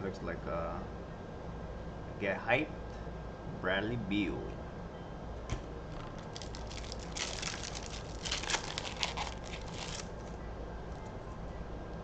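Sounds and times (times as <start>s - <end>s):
foil wrapper crinkling and tearing: 6.2s - 10.4s.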